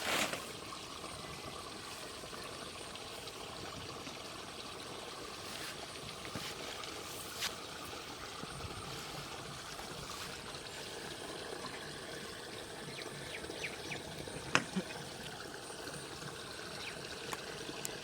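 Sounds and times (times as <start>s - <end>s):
trickling water: 0.0s - 18.0s.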